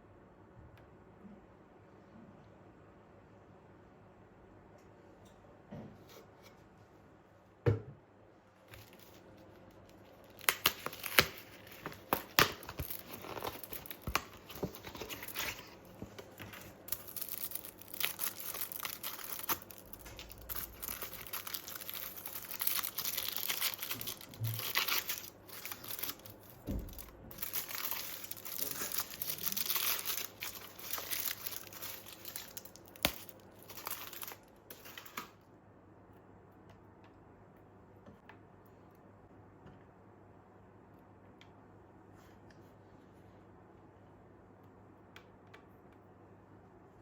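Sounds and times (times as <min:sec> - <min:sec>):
knock: 0:07.6 - 0:08.0
crinkling and tearing: 0:08.7 - 0:35.3.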